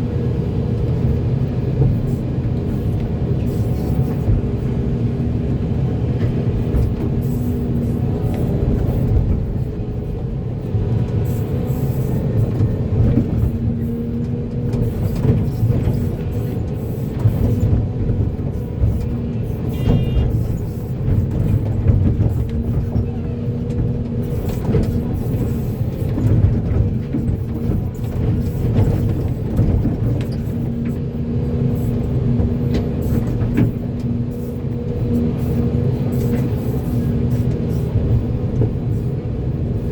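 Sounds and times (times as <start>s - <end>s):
excavator diesel engine running: 0.0s - 39.9s.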